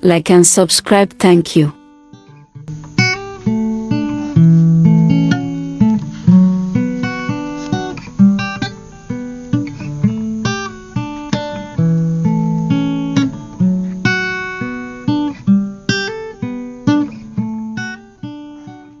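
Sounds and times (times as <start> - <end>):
acoustic guitar plucking: 0.0 - 19.0.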